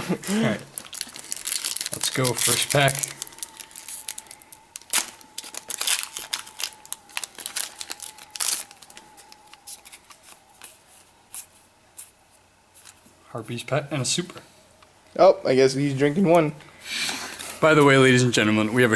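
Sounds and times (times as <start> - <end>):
foil wrapper tearing and crinkling: 0.2 - 11.5.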